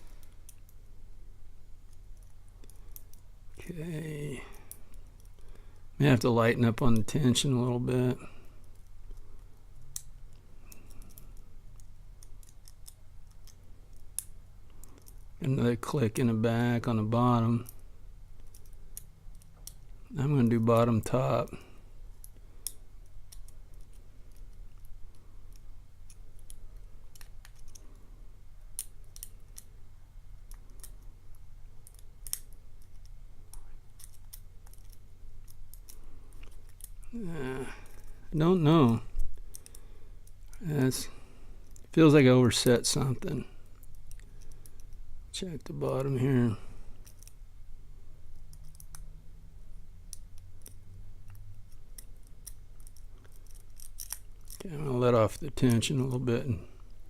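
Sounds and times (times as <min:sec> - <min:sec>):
low steady hum: 0:00.0 - 0:57.0
lock pick metallic clicks: 0:31.8 - 0:37.1, 0:47.0 - 0:47.4, 0:50.1 - 0:54.6.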